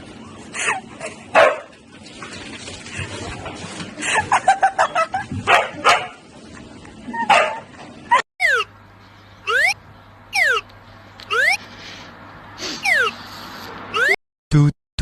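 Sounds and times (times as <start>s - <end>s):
dog barking and yipping: 1.3s - 1.7s, 4.9s - 6.2s, 7.1s - 8.7s, 12.8s - 13.2s
falling pitch glide: 9.5s - 10.6s, 11.3s - 11.6s.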